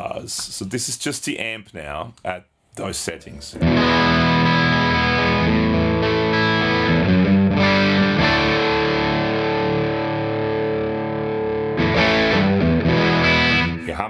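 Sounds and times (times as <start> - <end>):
electric guitar chords strummed: 3.6 - 13.9.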